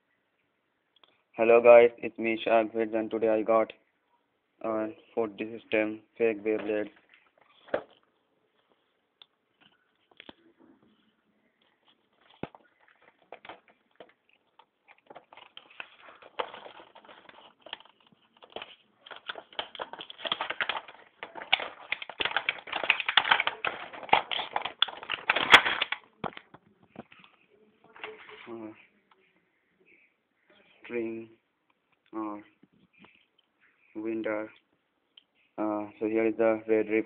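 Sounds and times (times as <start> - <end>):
plastic packaging crinkling: 6.5 - 28.6.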